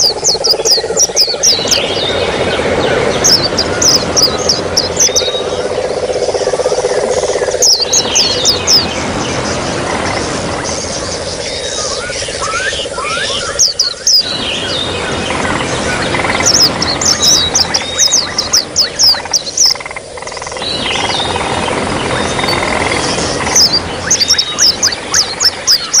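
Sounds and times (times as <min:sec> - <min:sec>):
songbirds singing: 0:00.0 - 0:26.0
trickling water: 0:00.0 - 0:26.0.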